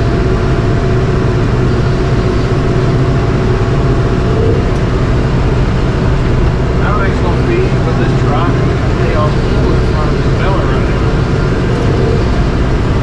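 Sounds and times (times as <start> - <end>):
baler machinery noise: 0.0 - 13.0
tractor engine drone: 0.0 - 13.0.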